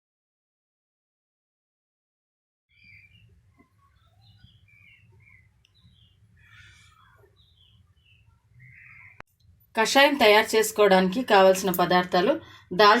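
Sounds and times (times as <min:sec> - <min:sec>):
birds chirping: 0:02.7 - 0:12.8.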